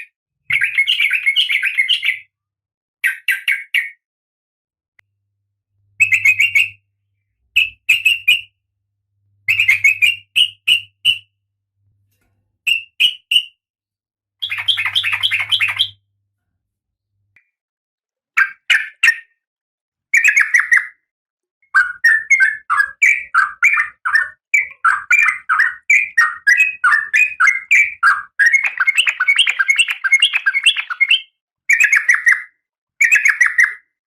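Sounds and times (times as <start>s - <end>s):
bird calling in harsh chirps: 6.0s - 8.6s, 9.4s - 11.4s, 12.7s - 13.6s, 14.4s - 16.0s.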